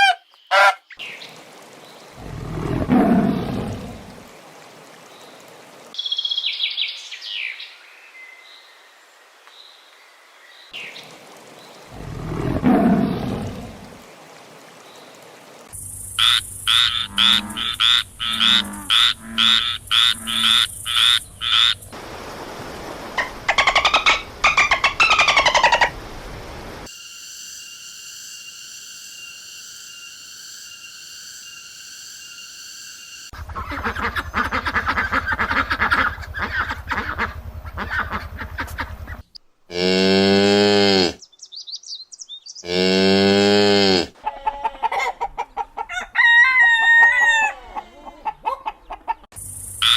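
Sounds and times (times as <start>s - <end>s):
frog croaking: 15.8s - 22.0s
animal calls: 16.2s - 21.9s, 23.2s - 26.0s
long low mooing calls: 16.3s - 21.2s.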